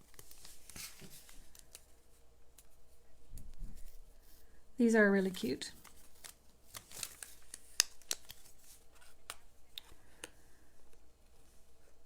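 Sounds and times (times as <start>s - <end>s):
paper clicks and rustles: 0.0s - 2.0s, 5.7s - 10.0s.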